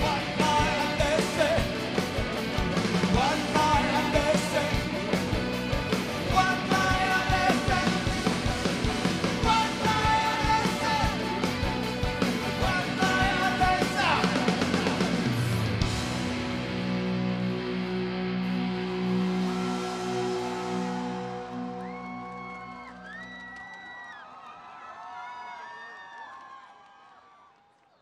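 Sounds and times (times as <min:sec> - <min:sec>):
live rock band playing: 0:00.0 - 0:22.4
sustained guitar or keyboard lines: 0:00.0 - 0:22.6.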